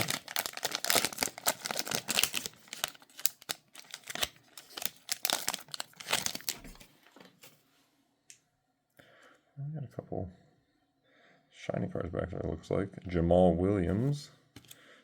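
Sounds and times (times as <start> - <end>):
wrapper tearing and crinkling: 0.0 - 6.9.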